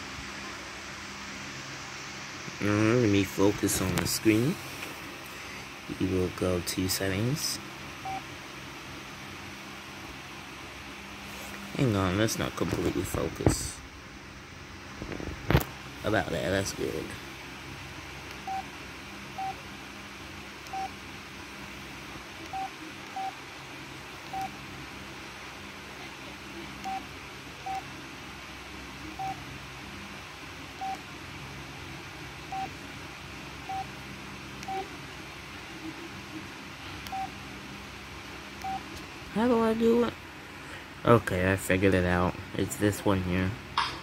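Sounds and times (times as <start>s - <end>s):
phone keypad beeps: 20.7s - 20.9s, 22.5s - 23.3s, 24.3s - 24.5s, 26.8s - 27.0s, 29.2s - 29.4s, 34.6s - 34.9s, 37.1s - 37.3s, 38.6s - 38.8s.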